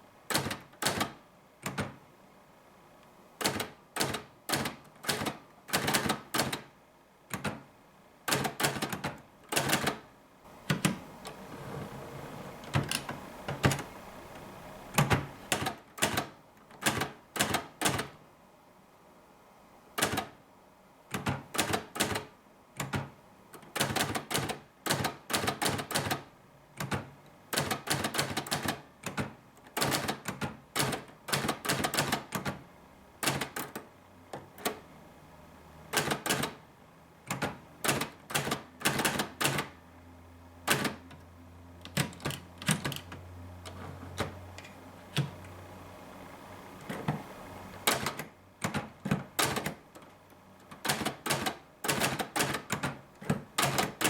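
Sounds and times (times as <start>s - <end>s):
manual typewriter typing: 0.3s - 2.0s, 3.4s - 6.7s, 7.3s - 7.7s, 8.3s - 10.0s, 12.6s - 13.9s, 14.9s - 18.2s, 20.0s - 20.4s, 21.1s - 32.6s, 33.2s - 34.8s, 35.9s - 39.8s, 40.6s - 41.2s, 41.8s - 45.4s, 47.8s - 54.0s.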